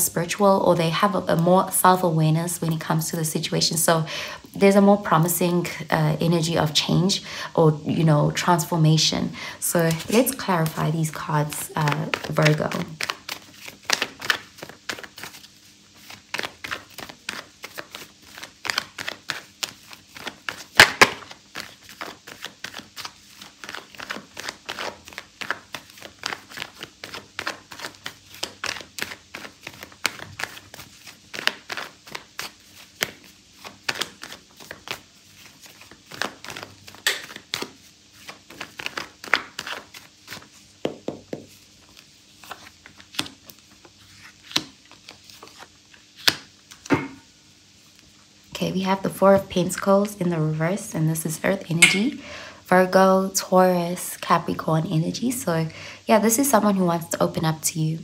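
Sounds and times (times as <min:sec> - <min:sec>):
cards shuffling: 0:09.8 - 0:47.0.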